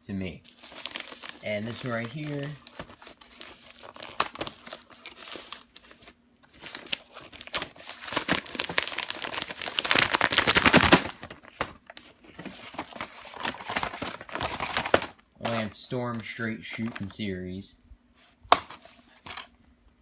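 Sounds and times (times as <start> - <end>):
packaging torn and crinkled: 0.5 - 12.0, 12.7 - 15.2.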